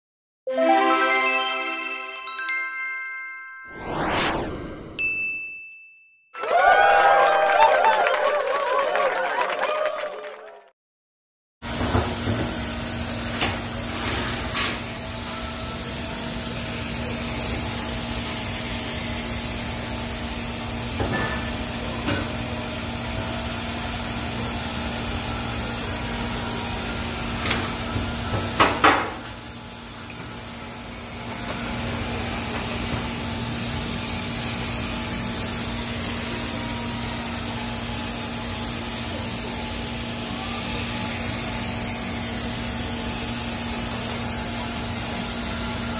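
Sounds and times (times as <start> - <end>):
low hum: 3.7 - 5.0
welding arc hissing: 11.7 - 28.4, 30.6 - 45.9.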